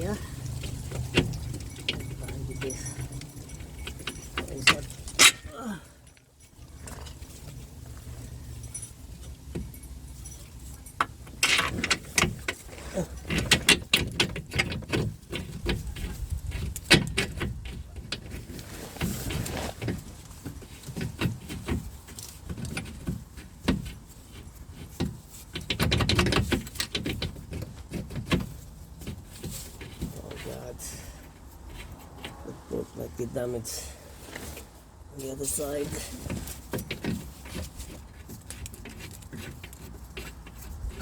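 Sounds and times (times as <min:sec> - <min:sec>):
metal tools clinking and knocking: 0:00.0 - 0:18.4
metal parts rattling: 0:00.0 - 0:18.5.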